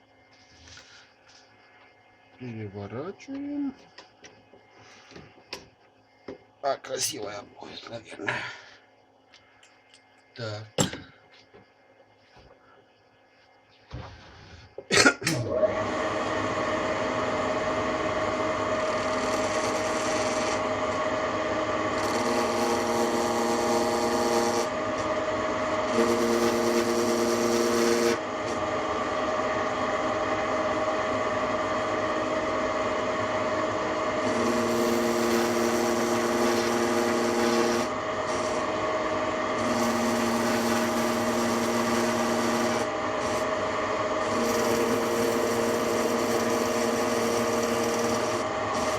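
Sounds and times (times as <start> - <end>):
lathe whining: 15.5 - 48.9
cutter scraping: 18.8 - 21.0, 21.8 - 28.6, 34.1 - 38.8, 39.4 - 43.6, 44.2 - 48.9.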